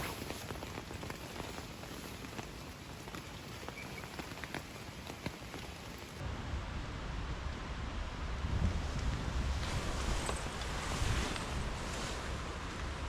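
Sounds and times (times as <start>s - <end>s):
rain falling: 0.0s - 6.2s
wind buffeting the microphone: 0.0s - 13.0s.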